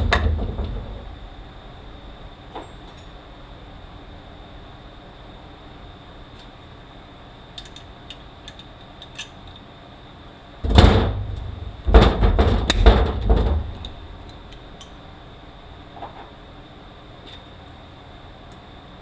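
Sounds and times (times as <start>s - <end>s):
heavy metal parts clunking and scraping: 10.7s - 14.0s.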